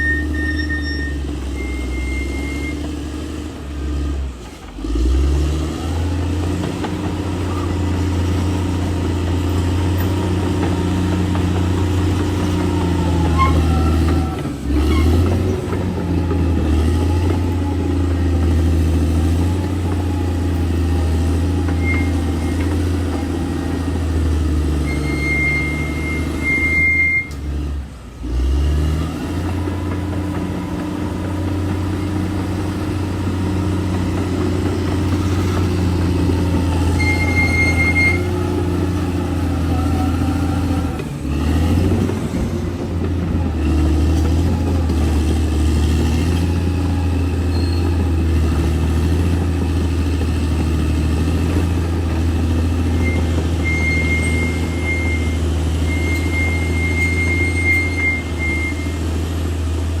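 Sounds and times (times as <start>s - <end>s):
thin high squeal: 0.0s - 2.9s, 21.7s - 22.8s, 24.8s - 27.4s, 36.9s - 38.4s, 47.5s - 47.9s, 53.0s - 59.0s
bulldozer diesel engine droning: 0.0s - 60.0s.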